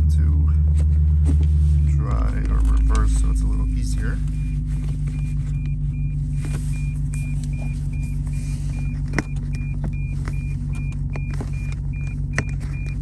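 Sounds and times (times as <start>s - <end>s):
car engine idling: 0.0s - 13.0s
in-car warning beep: 4.0s - 13.0s.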